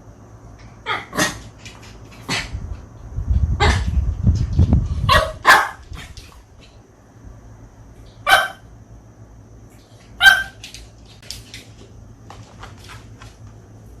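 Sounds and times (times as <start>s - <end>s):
small dog barking: 0.9s - 1.4s, 5.1s - 6.1s, 8.2s - 8.7s, 10.2s - 10.7s.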